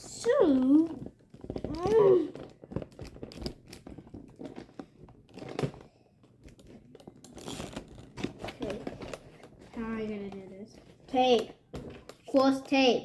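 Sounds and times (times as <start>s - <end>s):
plastic packaging crinkling and tearing: 0.0s - 12.4s
child vocal sound: 1.7s - 2.4s.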